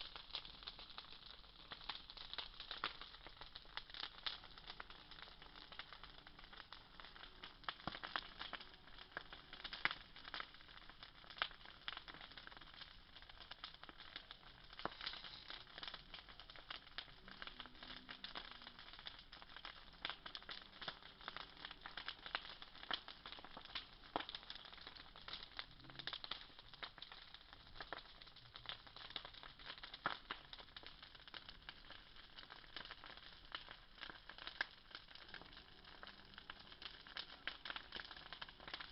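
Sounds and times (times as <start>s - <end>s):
bonfire crackling: 0.0s - 38.9s
fire hiss: 13.6s - 17.4s.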